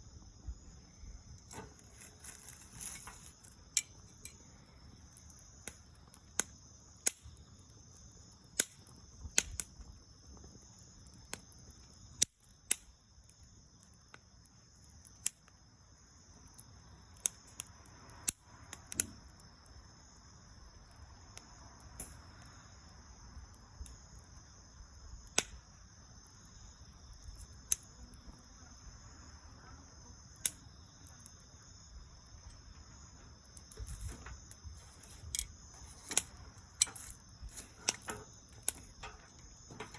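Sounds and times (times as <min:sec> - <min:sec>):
bonfire crackling and popping: 0:00.1 - 0:39.9.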